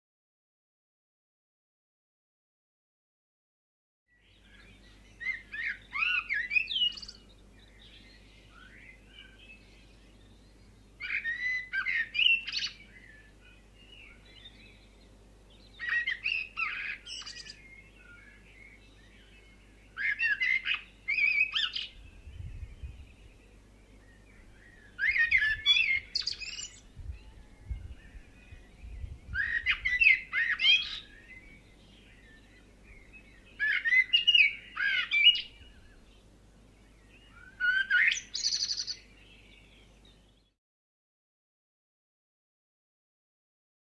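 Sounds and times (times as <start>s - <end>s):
faint bird chirps: 4.1s - 14.9s, 15.6s - 40.6s
songbird warbling: 4.4s - 14.9s, 15.6s - 36.1s, 37.1s - 40.1s.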